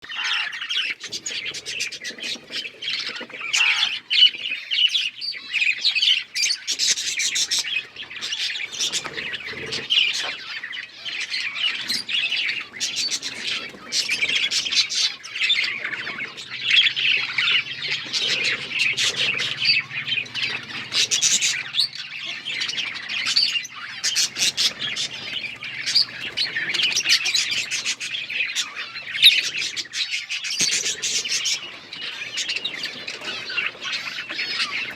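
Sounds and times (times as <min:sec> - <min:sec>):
harsh bird squawk: 0:00.0 - 0:04.7, 0:06.5 - 0:34.9
budgerigars chattering: 0:00.0 - 0:34.9.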